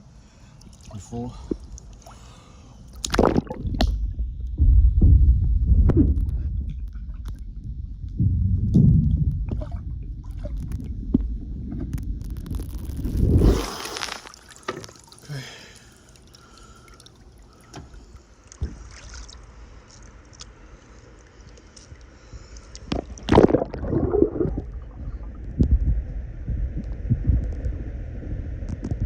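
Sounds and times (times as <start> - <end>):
pool water sloshing and splashing: 0.5 - 3.9, 13.4 - 20.2.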